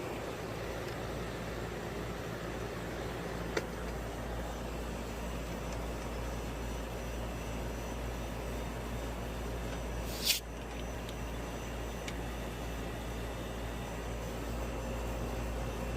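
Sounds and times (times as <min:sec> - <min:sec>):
air conditioner unit running: 0:00.0 - 0:15.9
sharp hiss: 0:10.1 - 0:10.4.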